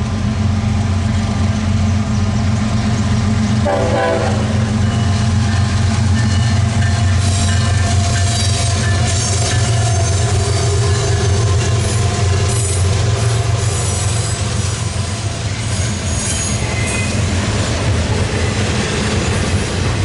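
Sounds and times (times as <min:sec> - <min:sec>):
diesel locomotives rumbling: 0:00.0 - 0:20.0
rattling train wheels: 0:00.0 - 0:20.0
train horn tone: 0:03.6 - 0:05.1
high squeals from freight cars: 0:03.6 - 0:19.8.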